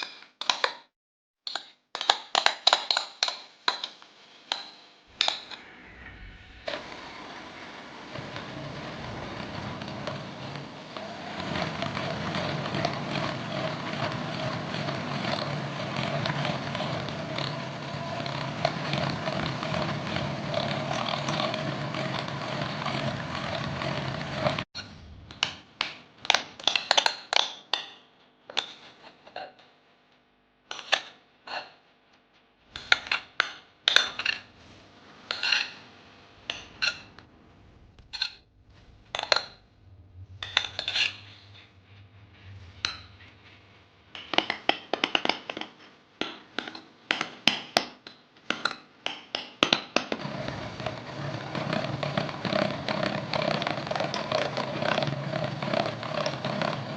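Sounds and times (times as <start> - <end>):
kitchen appliance motor running: 5.2 - 24.7, 50.1 - 56.9.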